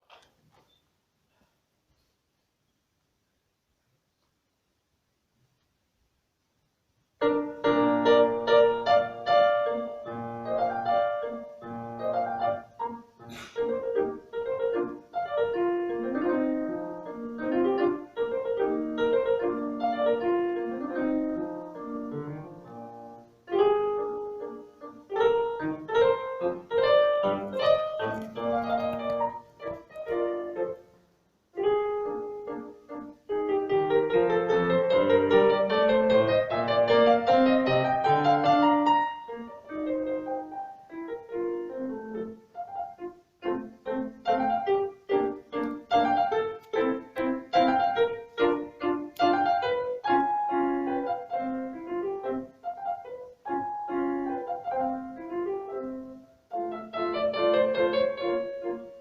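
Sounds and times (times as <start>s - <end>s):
piano music: 7.2s - 59.0s.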